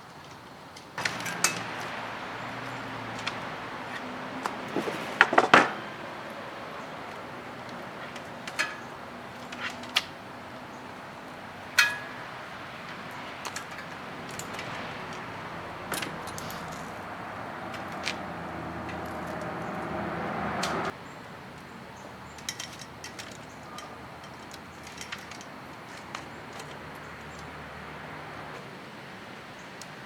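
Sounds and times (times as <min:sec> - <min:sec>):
small parts clicking and clinking: 0:15.9 - 0:17.0, 0:22.4 - 0:27.5.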